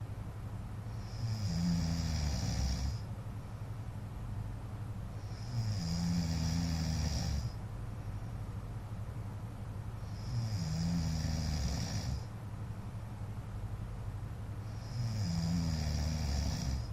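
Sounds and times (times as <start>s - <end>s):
steady low hum: 0.0s - 16.9s
man snoring: 0.9s - 3.0s, 5.2s - 7.6s, 10.0s - 12.3s, 14.6s - 16.9s.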